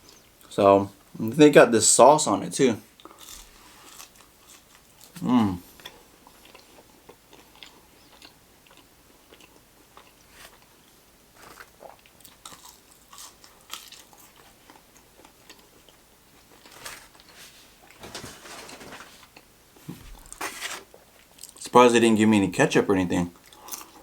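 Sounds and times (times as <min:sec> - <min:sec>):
person chewing: 0:03.0 - 0:18.0, 0:23.4 - 0:24.0
soft crunches: 0:16.4 - 0:21.6.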